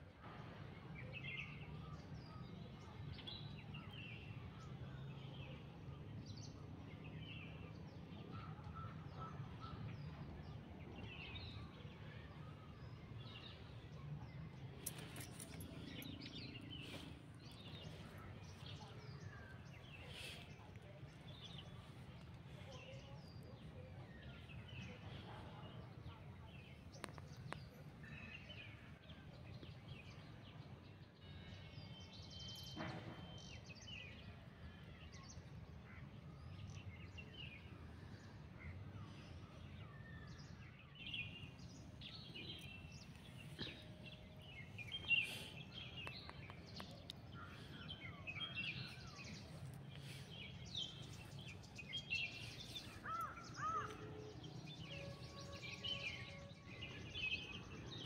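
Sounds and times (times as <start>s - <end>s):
birds chirping: 11.0s - 25.8s, 40.2s - 58.0s.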